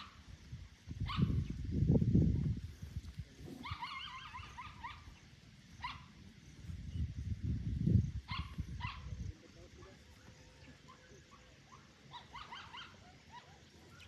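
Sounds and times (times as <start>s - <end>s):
animal's short high calls: 3.6s - 5.2s.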